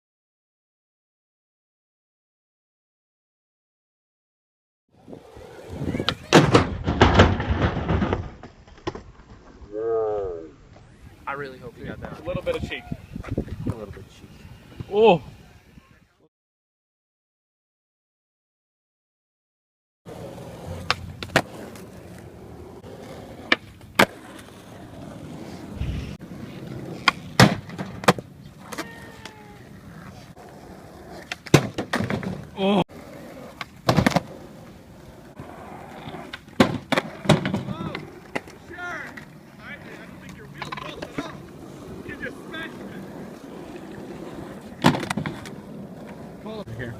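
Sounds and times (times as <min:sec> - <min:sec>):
skateboard rolling: 0:05.0 - 0:09.7, 0:20.1 - 0:46.9
skateboard crash bangs and clatter: 0:06.0 - 0:09.1, 0:27.0 - 0:28.3, 0:31.3 - 0:32.4, 0:33.8 - 0:34.3, 0:36.5 - 0:38.5, 0:44.8 - 0:45.5.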